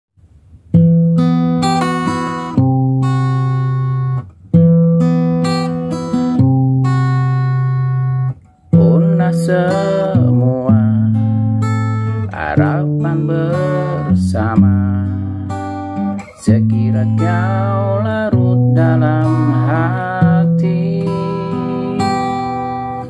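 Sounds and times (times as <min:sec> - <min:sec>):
acoustic guitar chords ringing: 0:00.2 - 0:23.0.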